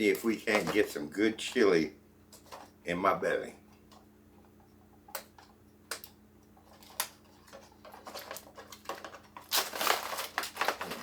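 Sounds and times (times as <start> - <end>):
foil pouch clicking and crinkling: 6.7 - 11.0.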